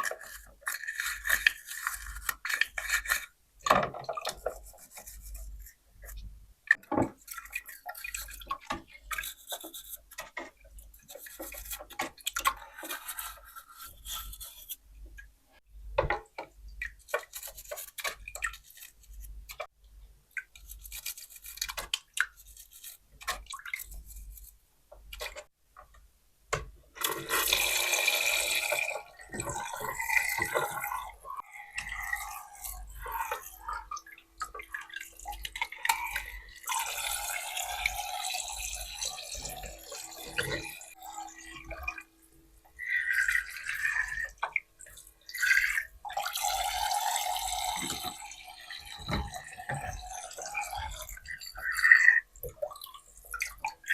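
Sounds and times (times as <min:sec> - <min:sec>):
water running from toy faucet: 0:27.0 - 0:34.0, 0:34.6 - 0:42.1, 0:42.8 - 0:44.4, 0:45.0 - 0:52.2.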